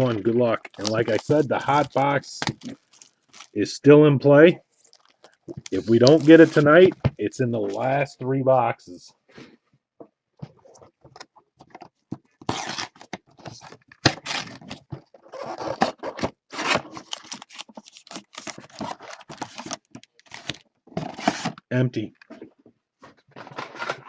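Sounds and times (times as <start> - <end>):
wrapping tearing and crinkling: 0.0 - 3.6, 4.7 - 6.8, 12.4 - 21.6.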